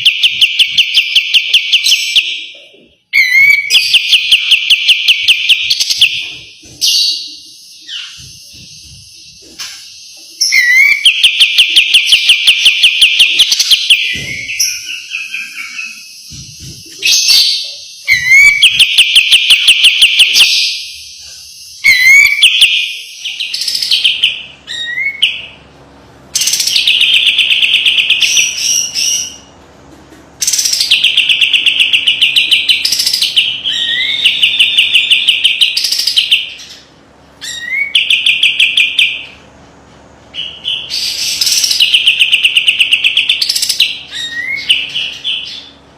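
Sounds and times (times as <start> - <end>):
bulbul singing rattling trills: 26.4 - 29.5, 30.4 - 39.4, 40.4 - 45.8.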